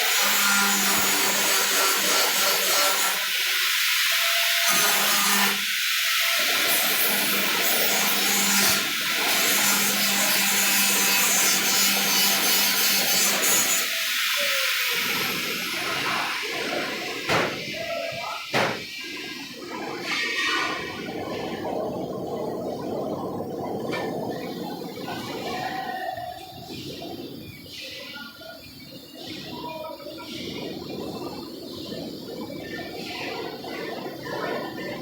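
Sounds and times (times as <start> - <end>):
harsh metalworking hiss: 0.0 - 21.5
sharp knocks: 17.3 - 17.7, 18.5 - 18.9.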